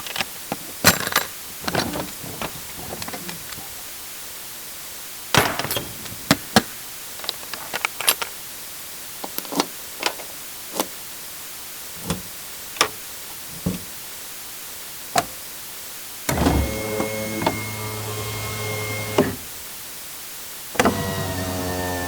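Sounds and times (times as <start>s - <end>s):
door latch clicks and knocks: 5.4s - 6.7s.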